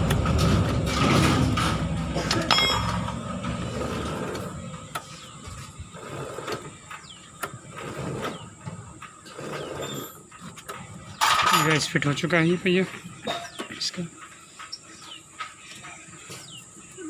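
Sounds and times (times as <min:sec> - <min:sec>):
metal tool clinks: 0:02.5 - 0:03.2.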